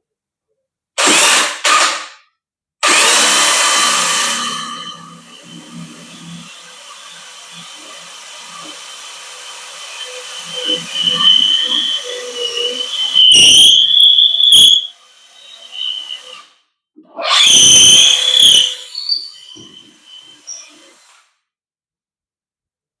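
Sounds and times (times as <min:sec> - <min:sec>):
hammer drill motor whine: 0:01.0 - 0:01.8, 0:02.8 - 0:16.6, 0:17.3 - 0:21.3
drill working under load: 0:01.0 - 0:02.0, 0:02.8 - 0:16.6, 0:17.3 - 0:21.3.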